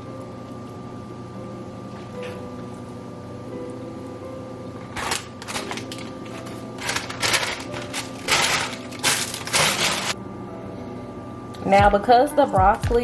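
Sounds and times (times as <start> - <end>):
quiet background music: 0.0 - 13.0
crunching scrapes at stove: 5.0 - 10.2.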